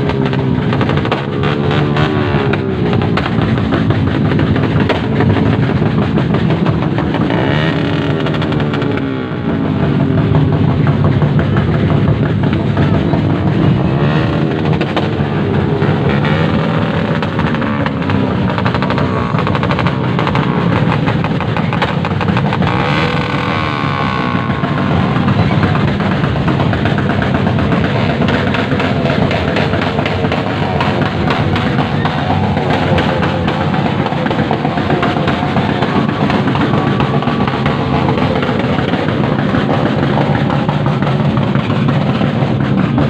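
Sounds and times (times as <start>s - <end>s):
crackling exhaust: 0.0s - 43.0s
vehicle engine revving: 0.0s - 43.0s.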